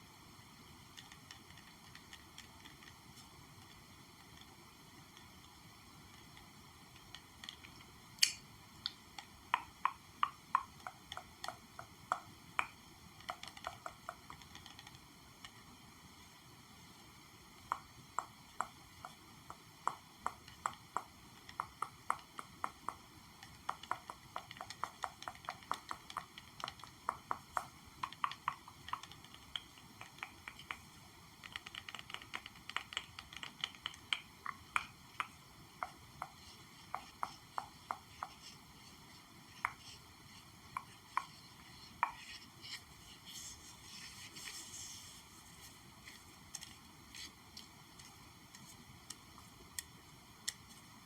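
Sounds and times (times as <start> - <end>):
crisp tapping on an object: 6.4 - 15.5, 17.7 - 44.7.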